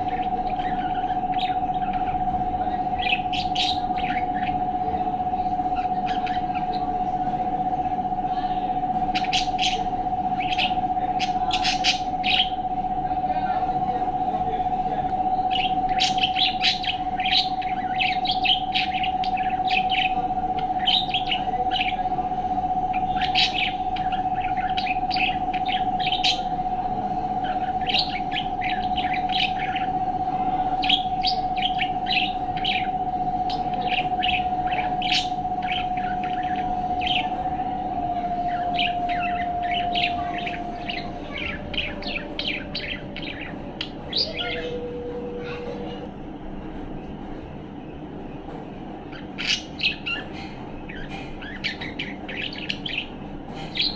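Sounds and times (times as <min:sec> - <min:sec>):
budgerigar chattering: 0:00.0 - 0:07.1
steady tone: 0:00.0 - 0:49.1.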